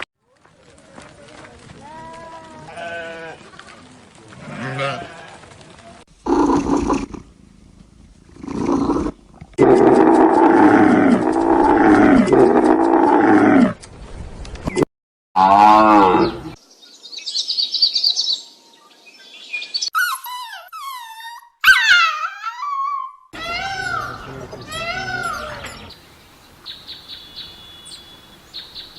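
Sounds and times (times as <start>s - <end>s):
low animal calls: 8.3s - 13.8s
falling whistled calls: 23.4s - 28.9s
high chirping: 23.4s - 28.9s.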